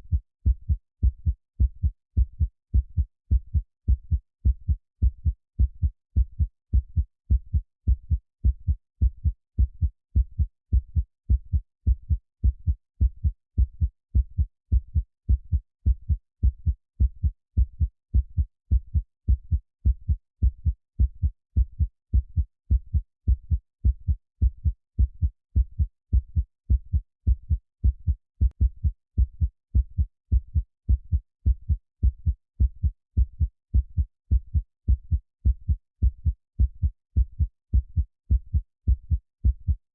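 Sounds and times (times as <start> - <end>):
heartbeat thumps: 0.0 - 39.8.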